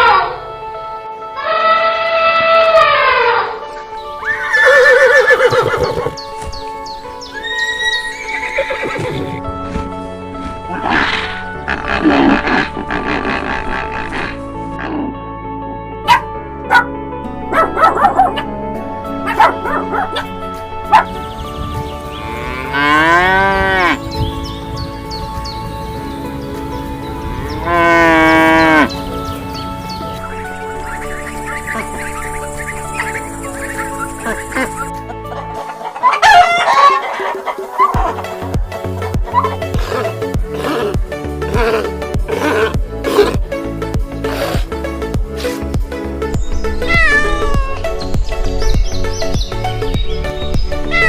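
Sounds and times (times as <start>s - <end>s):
background music: 0.0s - 51.0s
horse whinnying: 4.2s - 6.2s, 7.4s - 9.4s, 10.7s - 15.1s, 46.8s - 47.9s
cow mooing: 10.7s - 15.2s, 22.2s - 24.0s, 27.2s - 29.1s
dog barking: 16.0s - 18.5s, 19.2s - 20.3s, 20.9s - 21.1s.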